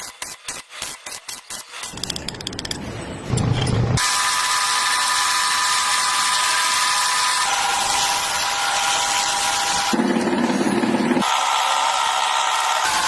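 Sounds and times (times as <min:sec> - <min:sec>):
metal lathe whine: 0:04.0 - 0:10.0.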